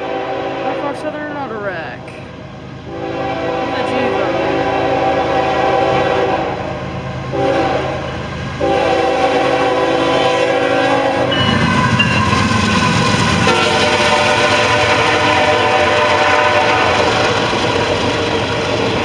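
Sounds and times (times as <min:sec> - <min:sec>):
locomotive air horn blasts: 0:00.0 - 0:01.3, 0:02.0 - 0:17.4
train rumble: 0:00.0 - 0:19.0.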